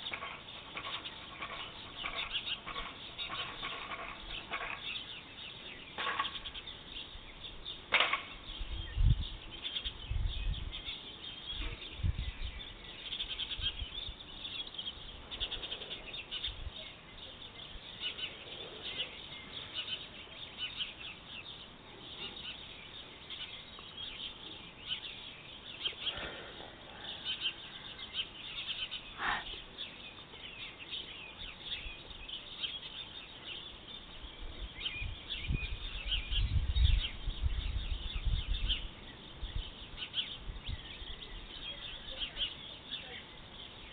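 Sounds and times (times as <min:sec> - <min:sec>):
birds chirping and twittering: 0:00.0 - 0:43.9
wind rumble on microphone: 0:06.4 - 0:18.0, 0:33.9 - 0:42.4.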